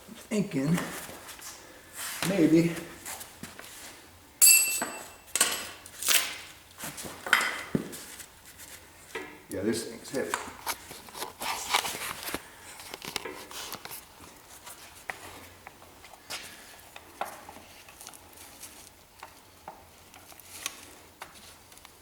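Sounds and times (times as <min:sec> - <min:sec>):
metal tools clinking and knocking: 0:04.4 - 0:06.4.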